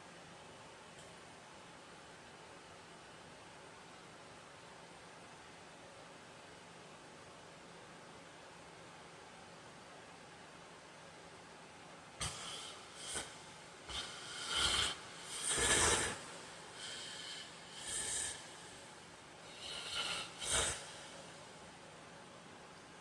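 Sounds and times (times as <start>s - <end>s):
man snorting in sleep: 12.2s - 18.9s, 19.5s - 21.4s.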